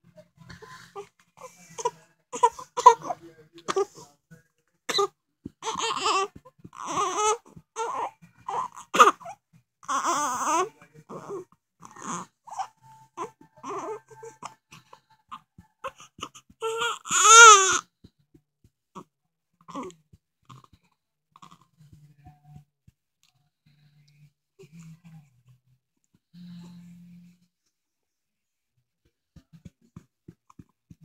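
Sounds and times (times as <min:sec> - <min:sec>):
baby crying: 0:05.0 - 0:14.6, 0:15.8 - 0:17.8.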